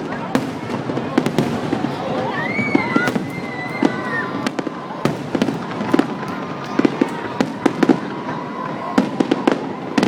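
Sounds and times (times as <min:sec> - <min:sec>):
fireworks bangs: 0:00.0 - 0:10.0
firework whistle: 0:02.2 - 0:06.0.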